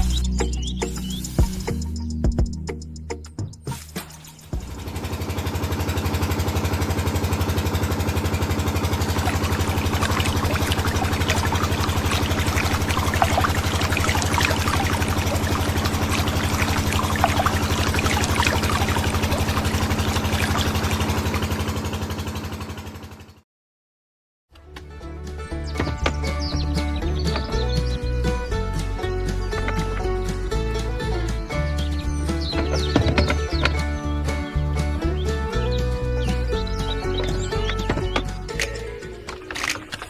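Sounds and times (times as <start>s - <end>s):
small electric motor running: 4.6s - 23.2s
crackling rattle: 38.5s - 40.0s.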